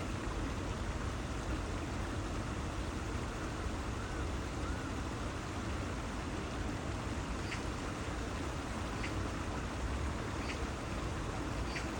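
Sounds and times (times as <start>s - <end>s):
bird chirp: 11.6s - 11.9s.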